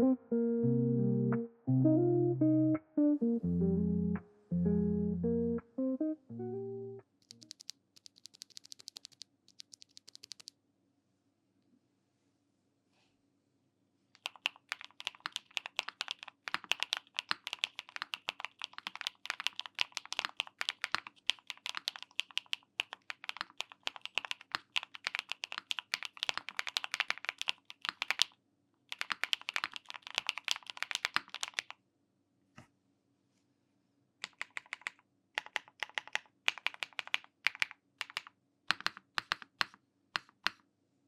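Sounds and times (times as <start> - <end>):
mechanical keyboard typing: 7.2 - 10.5, 14.2 - 28.3, 28.9 - 31.8, 34.2 - 40.6.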